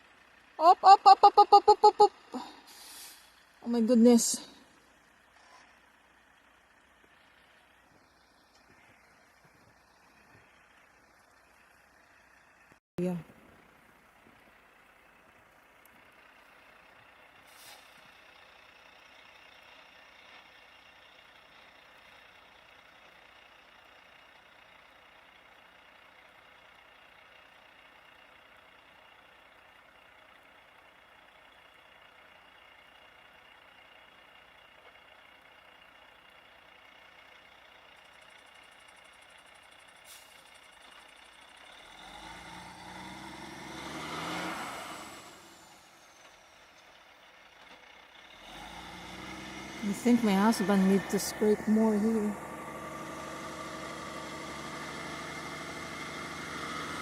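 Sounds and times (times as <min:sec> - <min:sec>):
distant engines idling: 0:01.2 - 0:43.6, 0:45.2 - 0:57.0
vehicle passing by: 0:41.7 - 0:45.9, 0:48.2 - 0:57.0.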